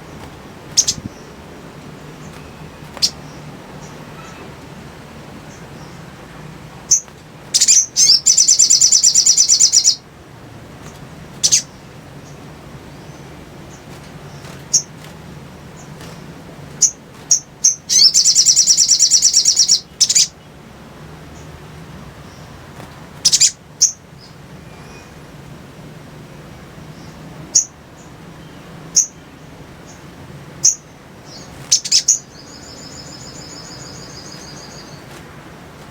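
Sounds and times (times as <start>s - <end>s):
bird chattering runs: 0.0s - 4.4s, 31.3s - 35.9s
faint steady hum: 0.0s - 35.9s.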